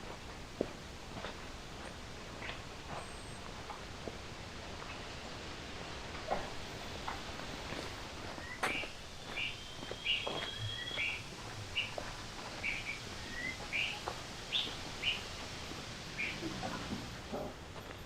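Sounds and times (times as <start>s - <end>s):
bird chirping: 8.4s - 12.0s, 12.6s - 15.3s.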